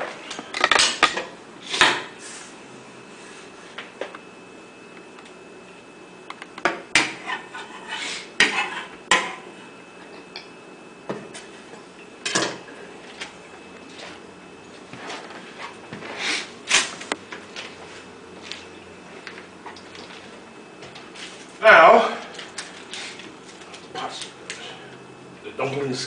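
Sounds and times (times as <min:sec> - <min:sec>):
kitchenware scraping: 0:07.0 - 0:09.5.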